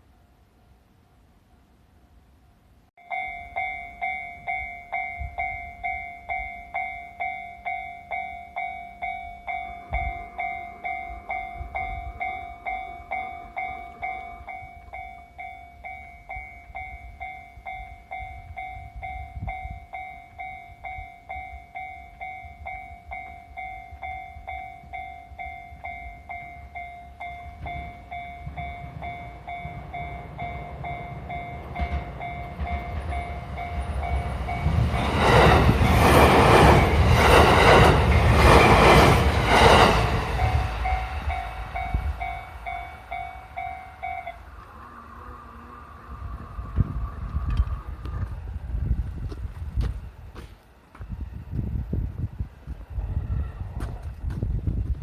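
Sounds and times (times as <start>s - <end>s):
train rumble: 2.6s - 55.0s
level crossing bell ringing: 3.0s - 34.9s, 40.3s - 44.5s.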